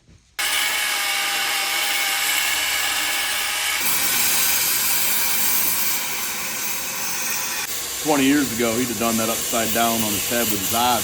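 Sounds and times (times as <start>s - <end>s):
arc welding sizzling hiss: 0.4s - 11.0s.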